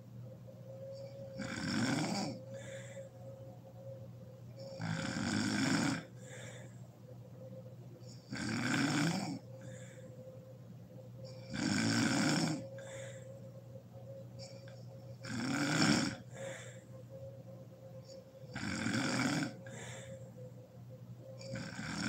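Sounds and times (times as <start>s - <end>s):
faint steady hum: 0.0s - 22.0s
woman snoring: 0.9s - 3.1s, 4.6s - 6.7s, 8.1s - 10.0s, 11.3s - 13.2s, 14.4s - 16.8s, 18.0s - 20.2s, 21.4s - 22.0s
soft breath out: 2.5s - 3.6s, 6.2s - 7.0s, 9.6s - 10.4s, 12.7s - 13.7s, 16.3s - 17.1s, 19.6s - 20.6s.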